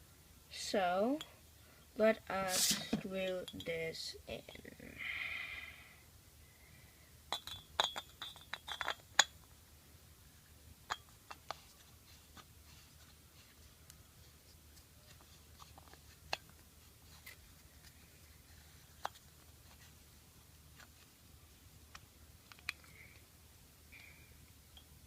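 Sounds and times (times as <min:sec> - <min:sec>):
light bulb clinking and scraping: 0:07.3 - 0:09.4.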